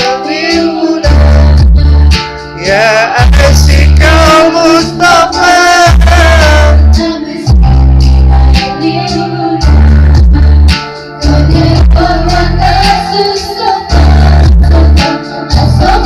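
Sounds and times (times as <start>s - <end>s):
backing music with bass and guitar: 0.0s - 16.0s
person singing off-key: 2.6s - 7.5s.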